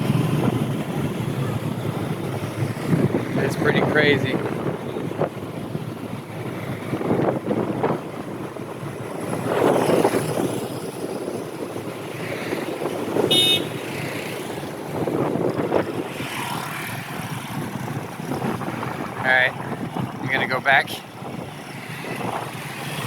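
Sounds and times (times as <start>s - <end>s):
motorbike engine: 0.0s - 19.3s
gusty wind noise: 0.0s - 23.0s
short horn beep: 13.3s - 13.8s.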